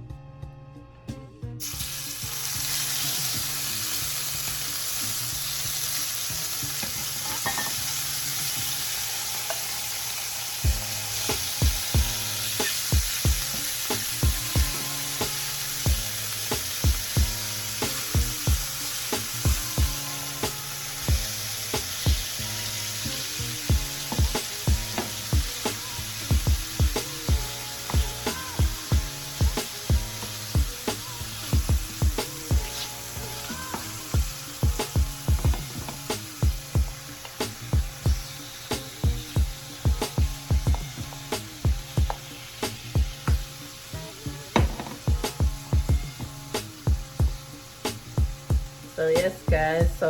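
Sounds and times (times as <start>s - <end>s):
shrimp sizzling in pot: 1.6s - 50.0s.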